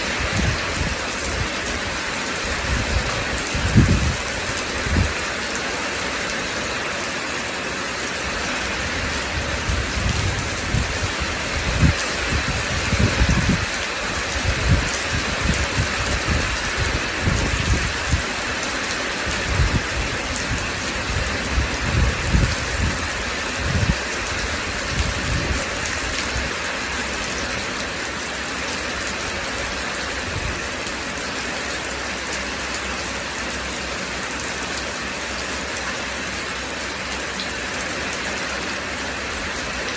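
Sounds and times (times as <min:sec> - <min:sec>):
thunder rumbling: 0:00.0 - 0:05.2
steady rain hissing: 0:00.0 - 0:39.9.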